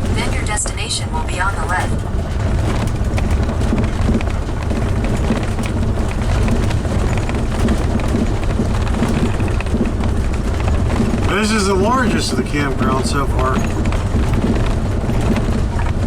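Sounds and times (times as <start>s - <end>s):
motorhome low rumble: 0.0s - 16.0s
small ticks and rattles: 0.0s - 16.0s.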